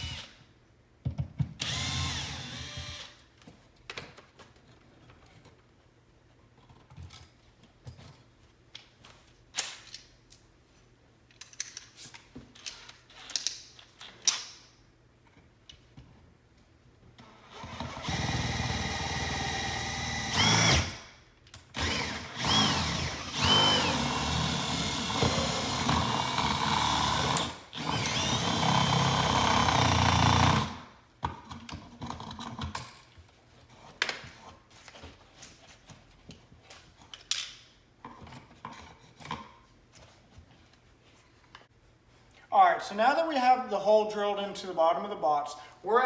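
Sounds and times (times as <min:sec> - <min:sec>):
power drill drilling: 0:01.6 - 0:03.1, 0:17.5 - 0:21.0, 0:21.8 - 0:30.8.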